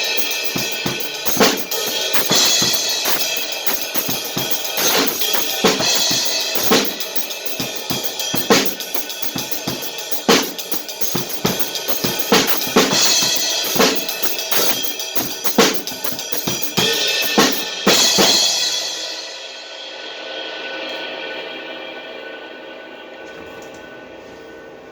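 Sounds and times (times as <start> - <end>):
drum kit playing a steady beat: 0.0 - 19.5.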